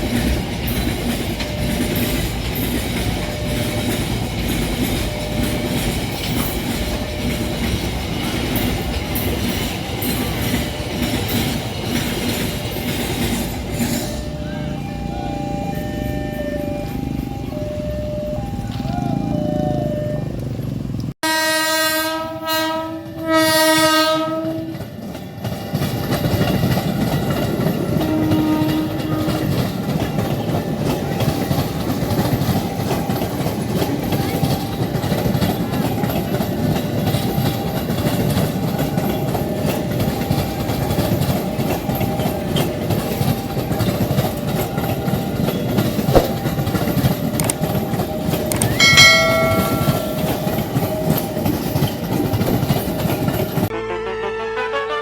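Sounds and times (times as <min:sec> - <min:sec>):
train wheels clattering on rails: 0:00.0 - 0:14.8, 0:22.4 - 0:53.7
high-pitched tone: 0:13.9 - 0:20.7, 0:48.3 - 0:51.3
train horn blasts: 0:21.2 - 0:25.0, 0:27.9 - 0:29.6, 0:53.7 - 0:55.0.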